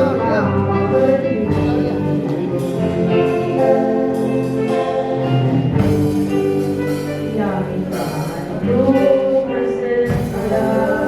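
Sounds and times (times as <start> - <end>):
instruments playing held chords: 0.0 - 11.0.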